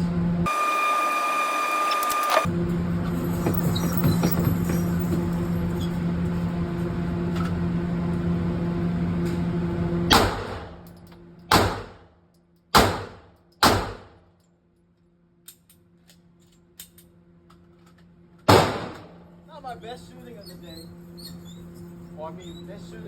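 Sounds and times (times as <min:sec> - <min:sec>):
steady droning hum: 0:05.0 - 0:23.0
pistol shots: 0:10.1 - 0:10.8, 0:11.5 - 0:12.1, 0:12.8 - 0:14.2, 0:18.5 - 0:19.1.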